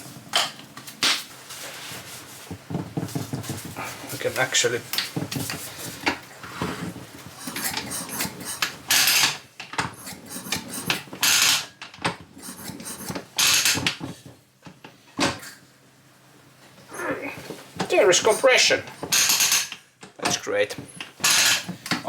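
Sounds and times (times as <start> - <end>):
moped engine turned over by hand: 6.8 - 14.3
metallic clicking and rattling: 7.4 - 14.0, 18.2 - 20.3.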